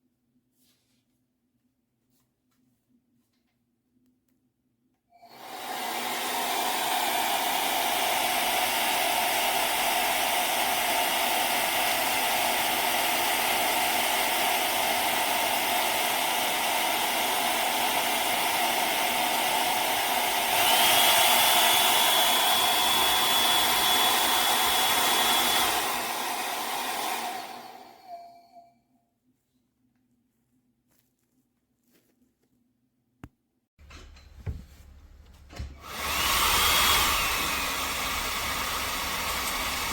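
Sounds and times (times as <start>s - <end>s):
hair dryer blowing hum: 5.2s - 28.6s, 35.4s - 39.9s.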